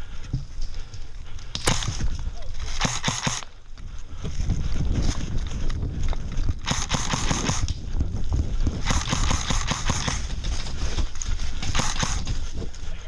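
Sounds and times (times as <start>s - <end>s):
airsoft guns firing bursts: 1.6s - 2.0s, 2.7s - 3.5s, 6.6s - 7.7s, 8.8s - 10.3s, 11.6s - 12.4s
thumping and rustling of movement: 8.0s - 13.0s.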